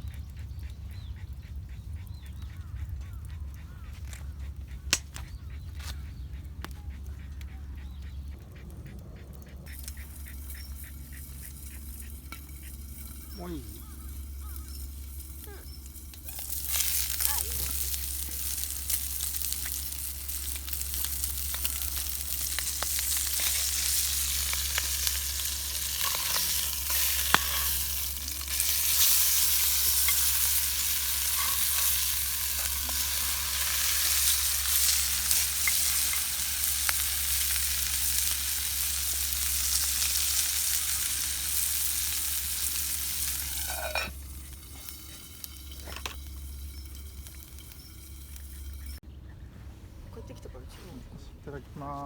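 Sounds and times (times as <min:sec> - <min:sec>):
campfire crackles: 0:00.0 - 0:49.0
food sizzling in a frying pan: 0:16.2 - 0:49.0.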